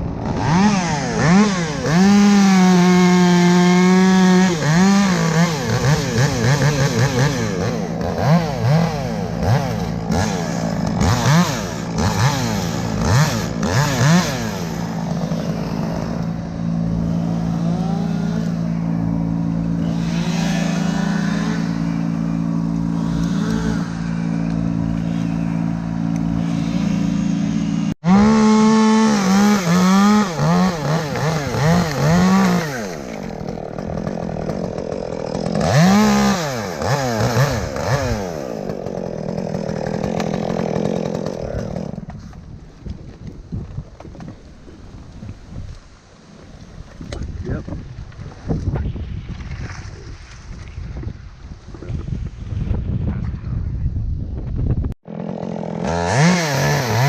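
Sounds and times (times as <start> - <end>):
chainsaw engine revving: 0.0 - 42.5, 55.0 - 57.0.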